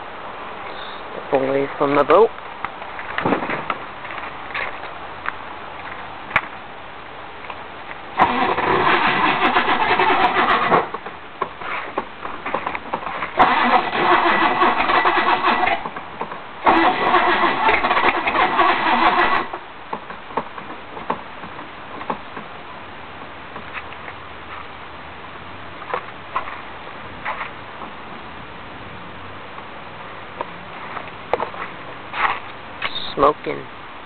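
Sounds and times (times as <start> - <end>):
boat engine cranking on starter: 8.2 - 11.0, 13.4 - 15.9, 16.6 - 19.6.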